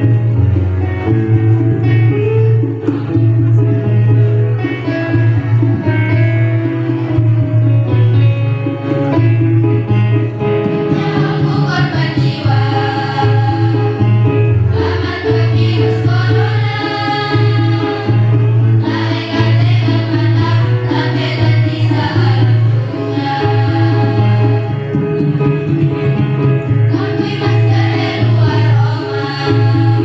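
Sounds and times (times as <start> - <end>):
percussion: 0.0 - 30.0
choir singing: 10.9 - 24.8, 26.9 - 30.0.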